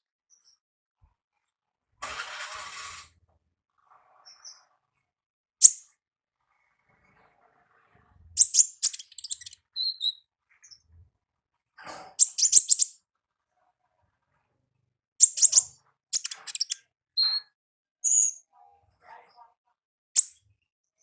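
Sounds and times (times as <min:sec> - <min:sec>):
songbird high-pitched chirps: 0:05.6 - 0:05.9, 0:08.4 - 0:10.8, 0:12.2 - 0:13.0, 0:15.2 - 0:18.5.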